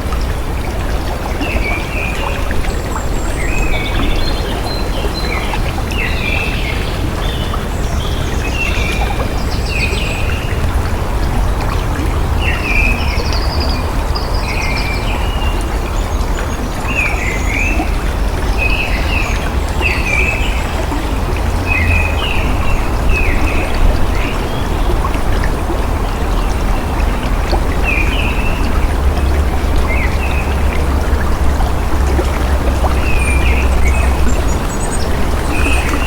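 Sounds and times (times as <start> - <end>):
running water flowing: 0.0 - 36.0
birds chirping: 26.0 - 36.0.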